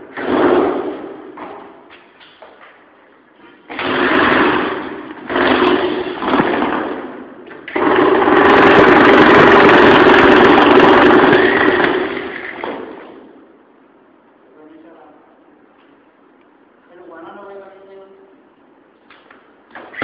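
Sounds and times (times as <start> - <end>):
concrete saw running: 3.7 - 7.1, 7.7 - 13.2.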